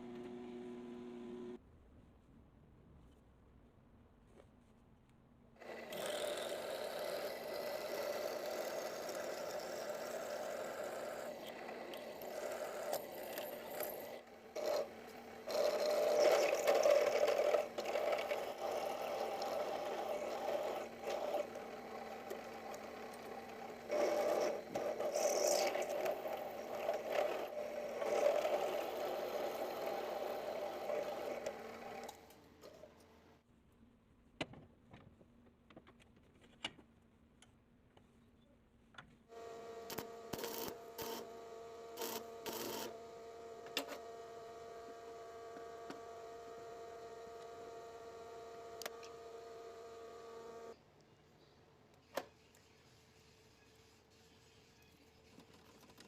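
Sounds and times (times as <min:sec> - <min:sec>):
power tool motor running: 0:05.6 - 0:32.2, 0:39.3 - 0:50.8.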